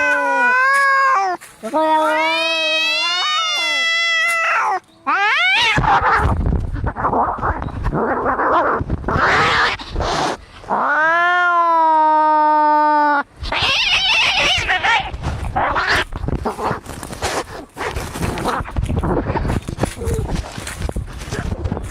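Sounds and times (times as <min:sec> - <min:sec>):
cat yowling: 0:00.0 - 0:06.3, 0:07.1 - 0:16.1
cats hissing and screeching: 0:00.0 - 0:21.6.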